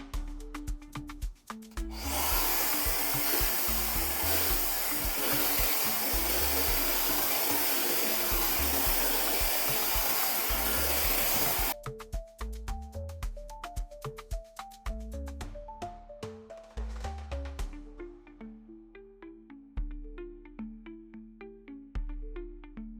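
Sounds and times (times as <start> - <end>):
background music with beat: 0.0 - 22.9
hair dryer running: 1.8 - 11.8.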